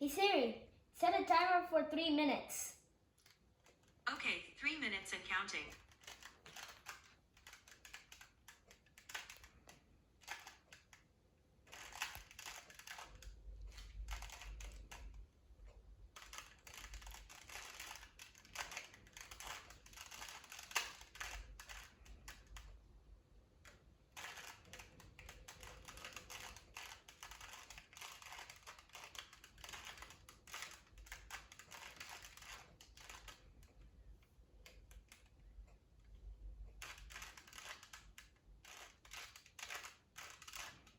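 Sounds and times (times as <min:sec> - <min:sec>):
plastic puzzle cube clicking: 0:05.7 - 0:11.1, 0:11.7 - 0:15.2, 0:16.2 - 0:22.8, 0:23.6 - 0:33.6, 0:36.7 - 0:40.9.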